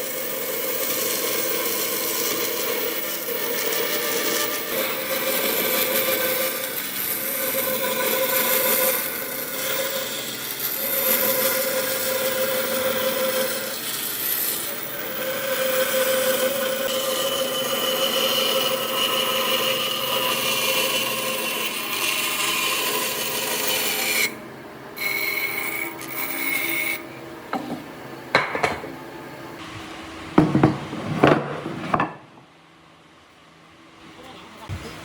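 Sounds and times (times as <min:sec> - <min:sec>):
power tool running on wood: 0:00.0 - 0:24.4
wooden knocks: 0:30.4 - 0:32.2.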